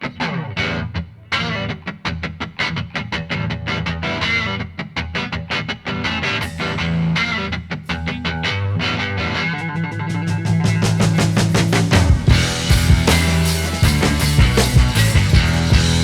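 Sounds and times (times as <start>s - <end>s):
picked guitar notes: 0.0s - 16.0s
bass line: 9.0s - 16.0s.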